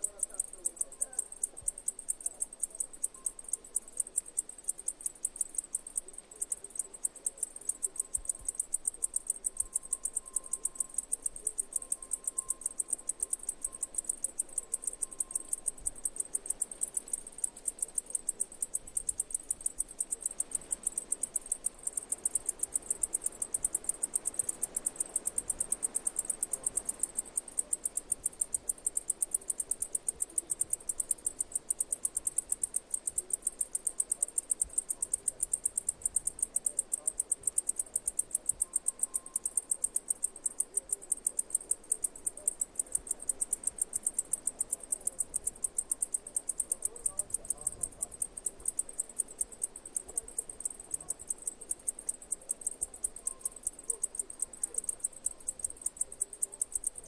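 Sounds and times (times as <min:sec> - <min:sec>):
cicadas chirping: 0:00.0 - 0:57.0.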